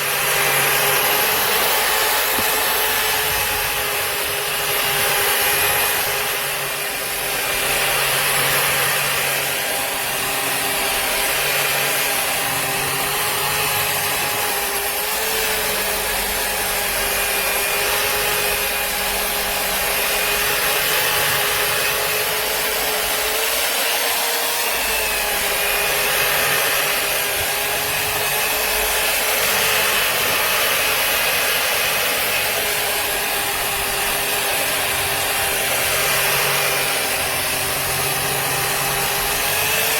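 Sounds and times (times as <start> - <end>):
burnishing sander whining: 0.0 - 39.9.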